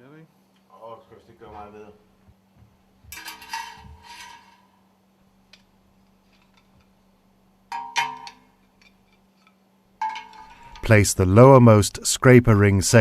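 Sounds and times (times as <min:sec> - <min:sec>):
faint steady hum: 0:00.0 - 0:13.0
metal parts clinking: 0:03.1 - 0:04.5, 0:07.7 - 0:10.9.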